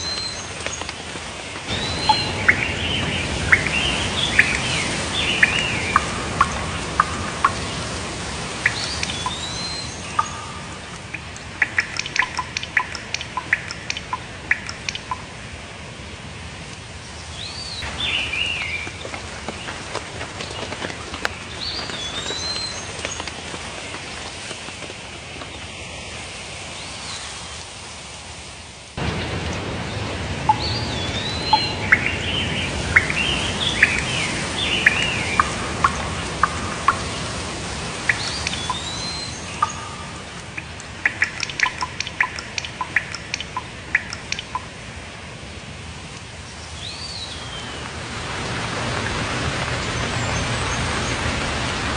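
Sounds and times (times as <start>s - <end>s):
songbirds chirping and singing: 0.0s - 15.3s, 30.5s - 44.7s
steady background hiss: 0.0s - 51.9s.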